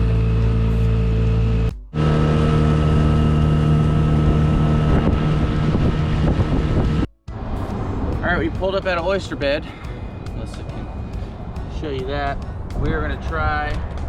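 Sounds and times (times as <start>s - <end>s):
outboard motor running: 0.0s - 14.0s
wind on microphone: 2.0s - 9.3s.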